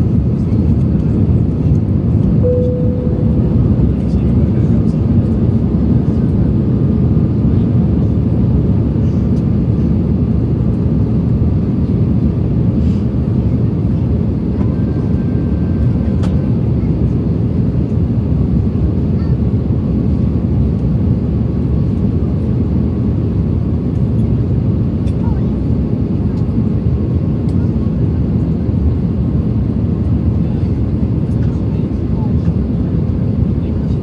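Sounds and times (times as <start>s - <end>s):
jet engine and airflow rumble: 0.0s - 34.0s
faint steady whine: 2.4s - 4.2s.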